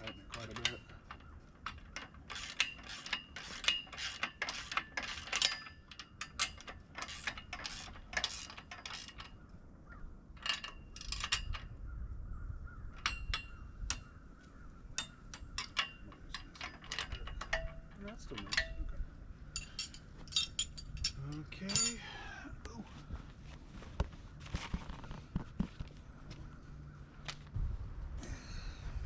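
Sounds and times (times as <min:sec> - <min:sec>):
metal clicks and clatter: 0:00.0 - 0:09.4, 0:10.4 - 0:11.7, 0:15.0 - 0:18.9.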